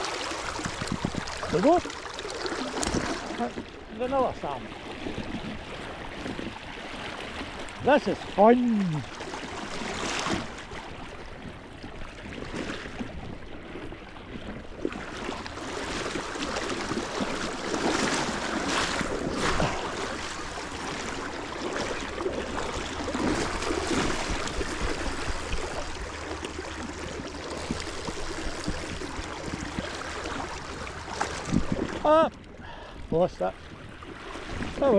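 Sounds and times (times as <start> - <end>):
wind buffeting microphone: 0.0 - 1.9, 27.5 - 32.2
river water rushing: 0.0 - 10.8.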